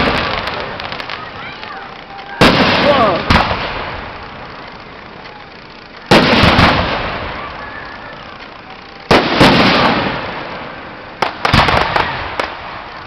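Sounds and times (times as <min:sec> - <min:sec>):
fireworks bangs: 0:00.0 - 0:05.3, 0:06.0 - 0:13.0
fireworks crackling: 0:00.0 - 0:13.0.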